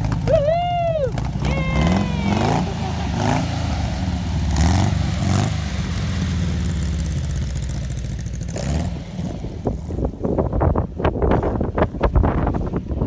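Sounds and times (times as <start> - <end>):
engine running at low pitch: 0.0 - 13.0
loud rushing bursts: 1.1 - 9.6.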